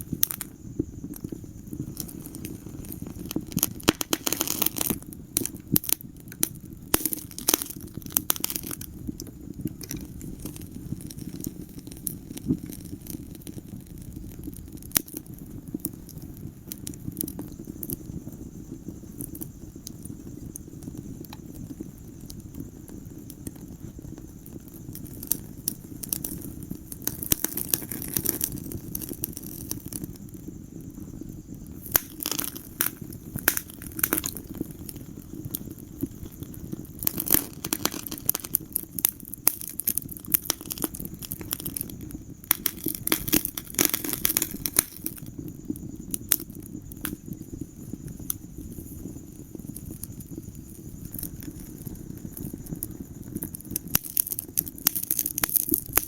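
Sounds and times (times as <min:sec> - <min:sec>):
wood fire crackling: 0:00.0 - 0:56.0.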